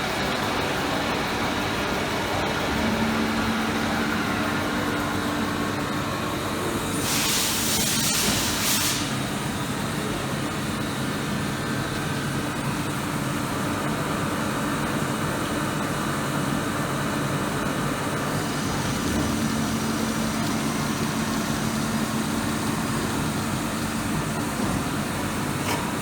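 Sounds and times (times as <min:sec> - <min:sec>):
lathe machine hum: 0:00.0 - 0:26.0
hissing burst: 0:06.9 - 0:09.3.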